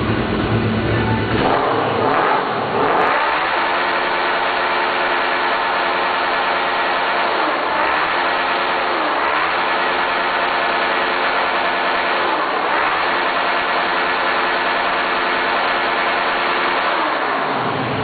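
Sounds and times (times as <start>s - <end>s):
motorcycle engine idling: 0.0s - 2.0s.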